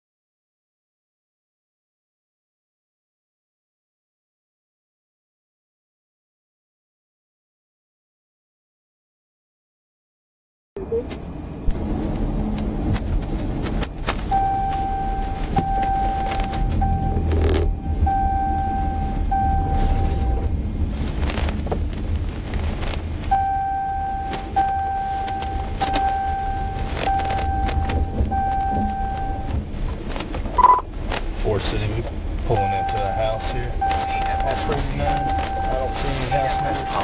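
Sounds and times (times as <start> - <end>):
road and engine rumble: 10.8 - 37.0
vehicle electronic chime beeping: 14.3 - 20.5, 23.3 - 29.6, 30.6 - 30.9, 32.5 - 37.0.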